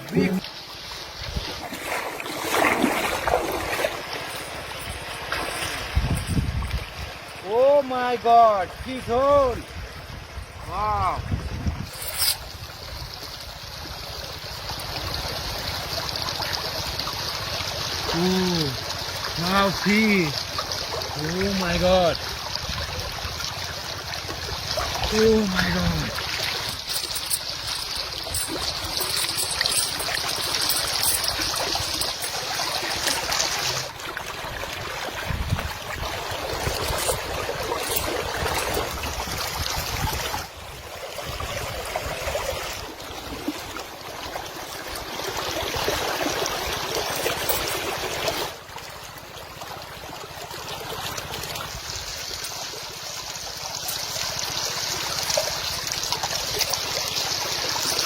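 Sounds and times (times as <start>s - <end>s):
running water trickle and rush: 0.0s - 58.0s.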